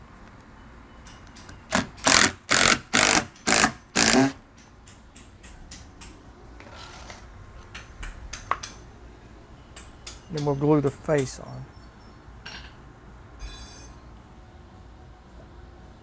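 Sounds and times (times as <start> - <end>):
cordless drill driving screws: 1.7 - 4.4.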